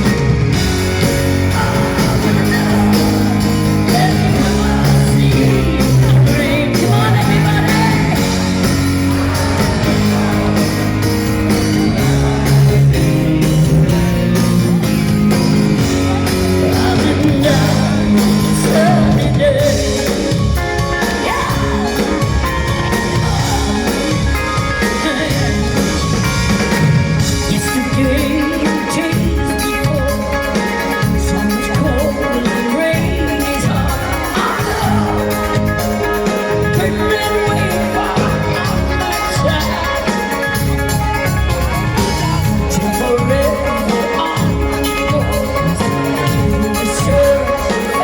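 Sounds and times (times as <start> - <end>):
live rock band with singing: 0.0 - 48.0.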